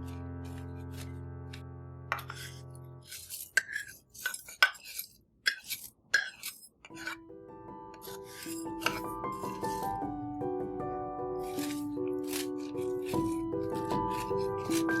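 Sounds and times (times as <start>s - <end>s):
background music: 0.0s - 3.4s, 7.0s - 15.0s.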